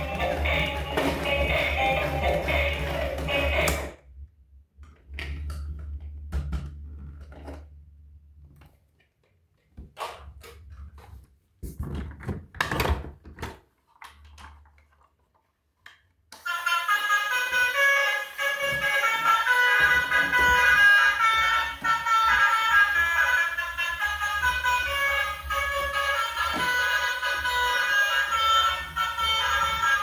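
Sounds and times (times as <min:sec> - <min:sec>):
music: 0:00.0 - 0:04.0, 0:16.4 - 0:30.0.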